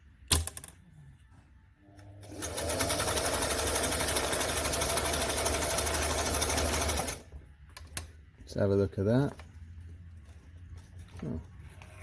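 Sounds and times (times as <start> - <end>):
sewing machine stitching: 2.2 - 7.2.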